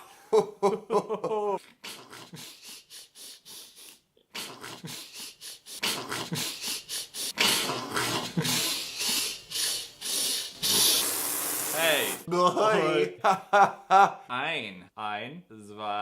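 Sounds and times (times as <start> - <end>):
person panting: 1.6 - 11.1.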